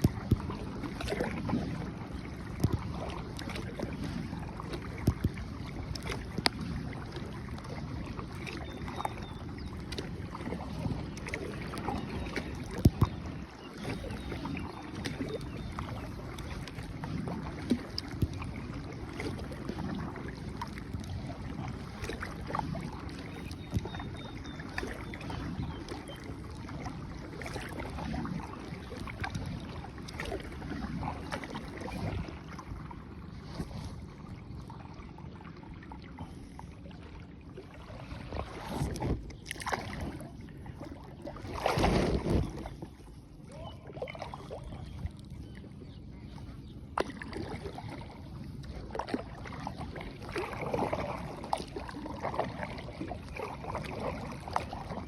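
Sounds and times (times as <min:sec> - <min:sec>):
wind on microphone: 0:00.0 - 0:26.9, 0:38.1 - 0:40.3, 0:41.4 - 0:43.8
water sloshing around rowing boat: 0:00.0 - 0:55.0.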